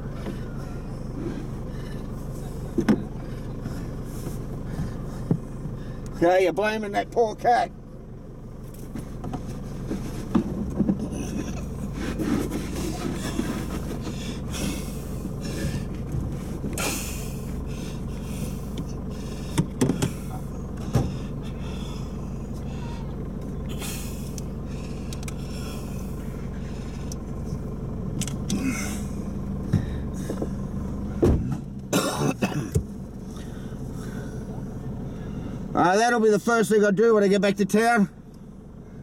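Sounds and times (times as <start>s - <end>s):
engine idling: 0.0s - 39.0s
knocks and rustling: 8.8s - 14.2s, 31.2s - 31.8s.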